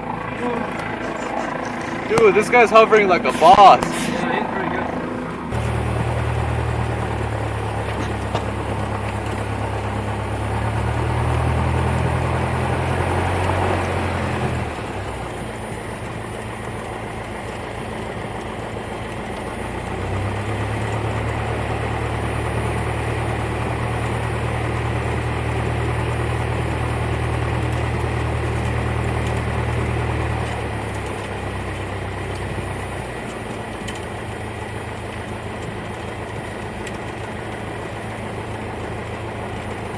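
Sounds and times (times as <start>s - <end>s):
plane engine drone in cabin: 0.0s - 39.9s.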